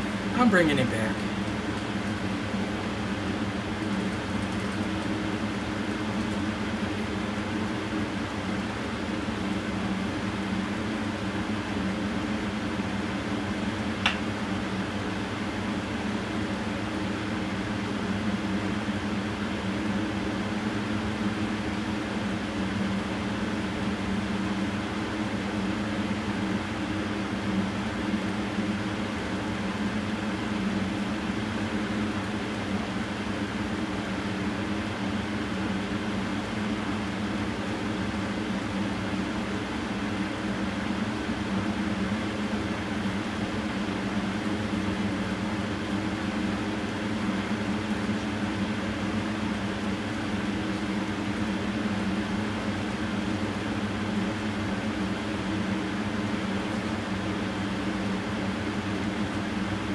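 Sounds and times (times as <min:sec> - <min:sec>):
machine hum and whir: 0:00.0 - 0:59.9.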